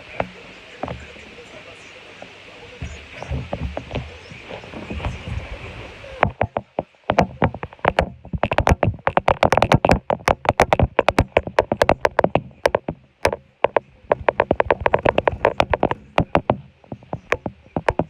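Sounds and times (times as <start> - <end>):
loose objects rattling and knocking: 2.8 - 18.0.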